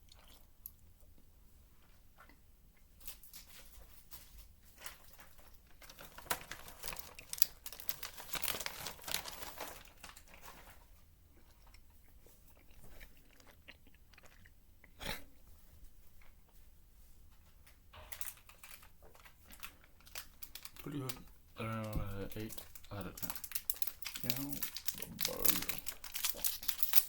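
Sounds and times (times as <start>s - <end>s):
chewing gummy candy: 0.0s - 3.4s, 4.8s - 15.5s, 18.0s - 27.0s.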